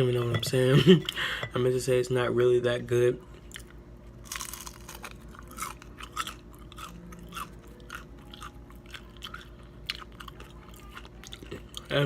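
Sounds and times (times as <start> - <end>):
person chewing fried food: 3.3 - 12.0.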